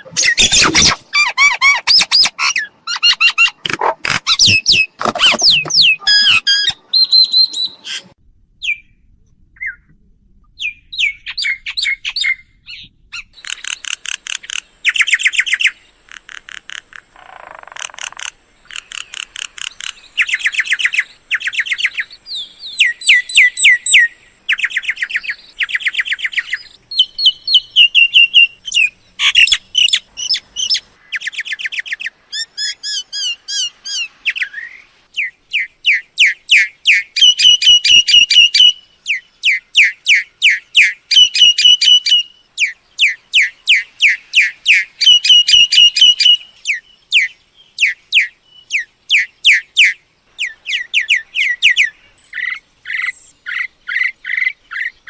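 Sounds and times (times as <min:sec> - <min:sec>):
mynas squawking and whistling: 0:00.0 - 0:08.1.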